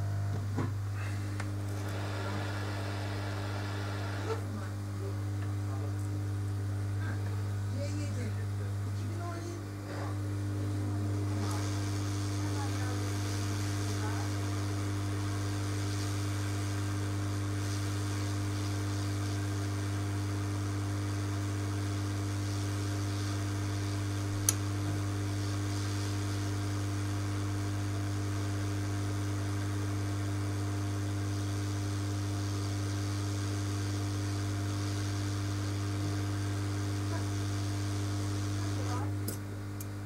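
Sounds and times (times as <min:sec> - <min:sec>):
electrical mains hum: 0:00.0 - 0:40.0
sharp click: 0:24.4 - 0:24.6.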